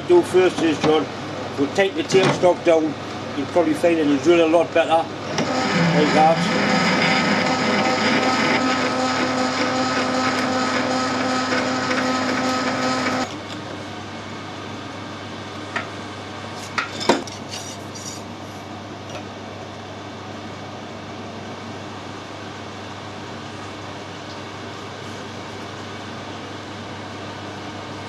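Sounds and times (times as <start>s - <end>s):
metal lathe whining: 5.2s - 13.3s.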